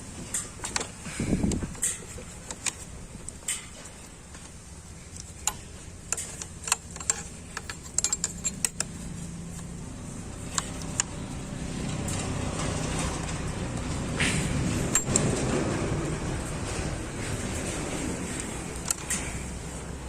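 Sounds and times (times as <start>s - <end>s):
hand tools clicking on metal: 0.2s - 4.5s, 5.1s - 9.1s, 10.4s - 11.2s, 14.6s - 15.6s, 16.8s - 20.0s
low hum: 1.0s - 20.0s.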